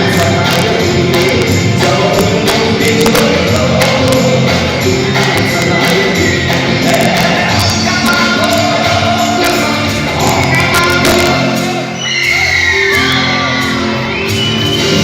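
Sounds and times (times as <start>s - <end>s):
live band with singer: 0.0s - 15.0s
audience whooping: 11.4s - 15.0s.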